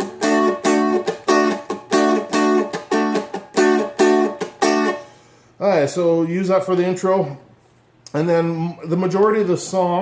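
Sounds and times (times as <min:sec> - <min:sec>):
muted guitar strumming: 0:00.0 - 0:05.2.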